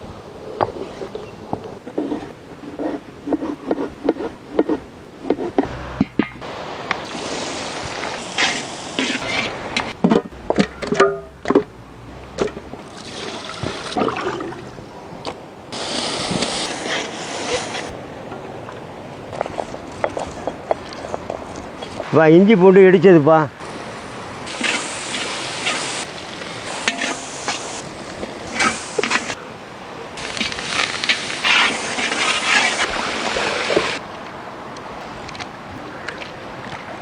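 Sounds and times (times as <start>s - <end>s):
rushing liquid-like hiss: 6.4s - 10.8s, 12.8s - 14.4s, 15.7s - 18.1s, 23.6s - 34.0s
metal utensils and pots clinking: 9.0s - 11.7s, 26.8s - 27.2s.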